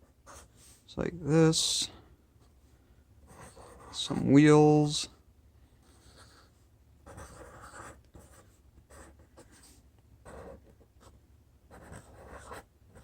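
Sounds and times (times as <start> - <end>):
marker scratching on paper: 0.2 - 0.8, 3.3 - 4.2, 5.8 - 13.0.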